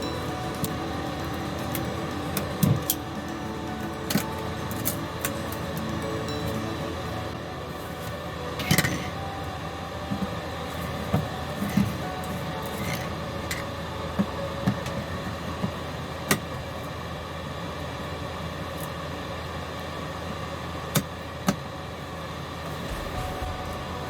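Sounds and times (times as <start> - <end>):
mechanical hum: 0.0 - 24.0.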